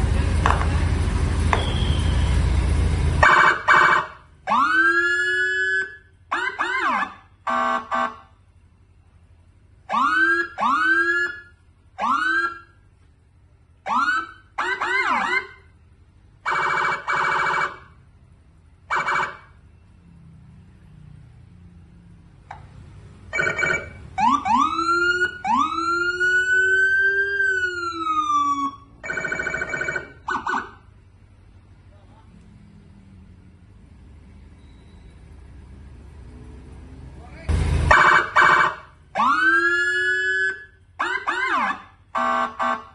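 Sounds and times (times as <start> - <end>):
electronic police siren: 3.2 - 8.3, 9.9 - 12.8, 13.9 - 15.7, 16.4 - 17.9, 18.9 - 19.7, 23.3 - 30.9, 37.9 - 42.9.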